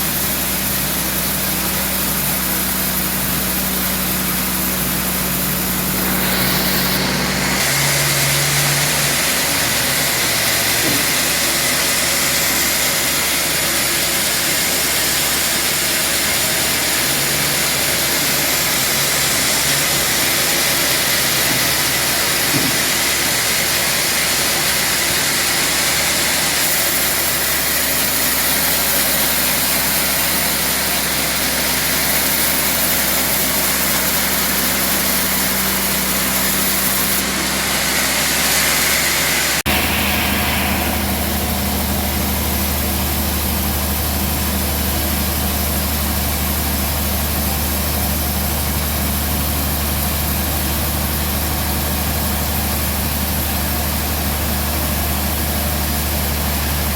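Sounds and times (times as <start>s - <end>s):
low mechanical hum: 0.0s - 13.2s, 39.5s - 56.9s
band sawmill running: 0.0s - 56.9s.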